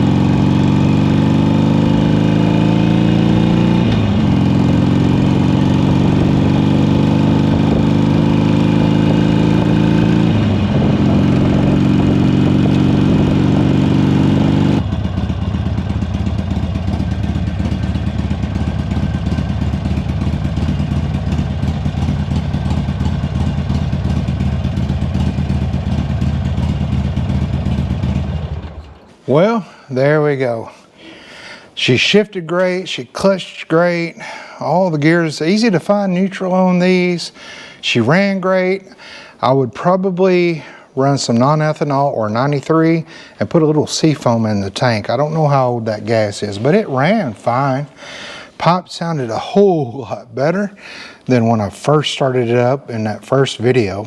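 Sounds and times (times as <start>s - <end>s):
motorcycle engine shifting gears: 0.0s - 29.5s.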